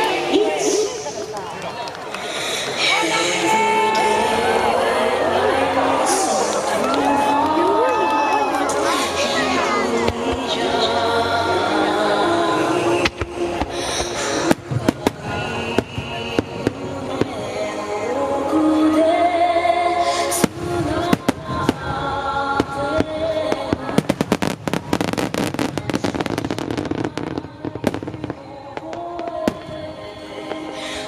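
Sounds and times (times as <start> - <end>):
music with singing voice: 2.2 - 31.0
fireworks bursting: 8.7 - 18.0, 20.1 - 31.0.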